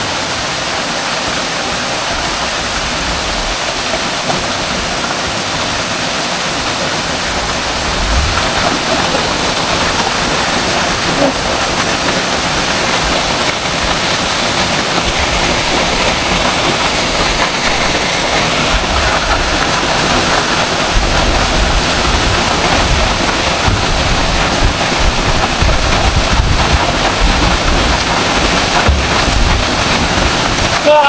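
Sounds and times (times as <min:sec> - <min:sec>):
waterfall rushing: 0:00.0 - 0:31.0
wind buffeting microphone: 0:06.4 - 0:30.9.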